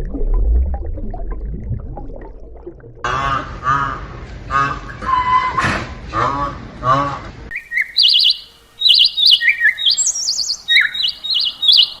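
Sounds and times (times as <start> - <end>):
songbird whistling song: 7.5 - 12.0.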